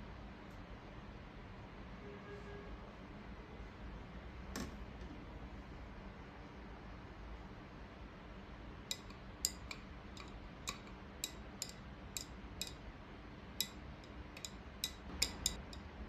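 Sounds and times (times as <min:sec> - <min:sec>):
drink glass clinking: 0:14.4 - 0:15.8.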